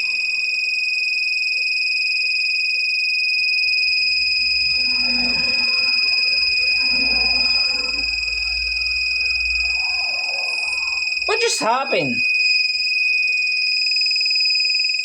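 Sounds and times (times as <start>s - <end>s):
high-pitched alarm buzzer tone: 3.3s - 13.5s.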